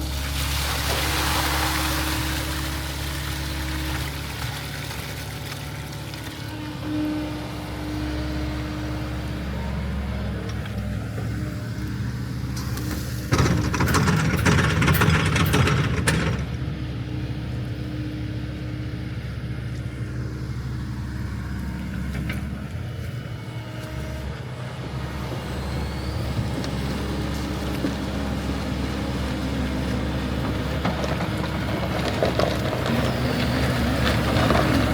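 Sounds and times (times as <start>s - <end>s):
diesel engine running: 0.0s - 34.9s
clattering and scraping: 12.6s - 16.6s.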